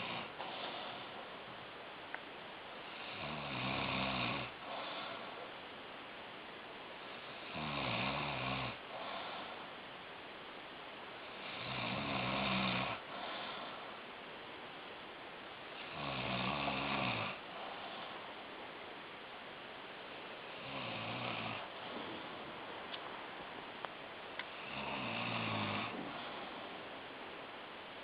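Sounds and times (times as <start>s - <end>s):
man snoring heavily: 0.0s - 1.1s, 2.9s - 5.4s, 7.2s - 9.5s, 11.4s - 13.8s, 15.8s - 18.0s, 20.6s - 21.7s, 24.5s - 26.3s.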